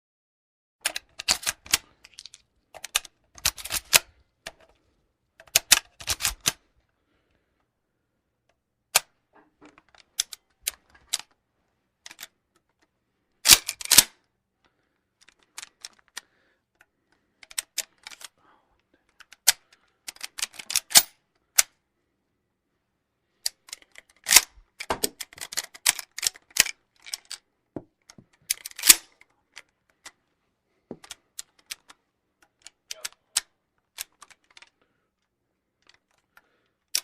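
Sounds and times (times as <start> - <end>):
rifle action metallic clicks: 0.8 - 4.7, 5.4 - 6.6, 12.0 - 12.3, 13.4 - 14.3, 19.2 - 21.7, 23.4 - 27.4, 28.1 - 30.2.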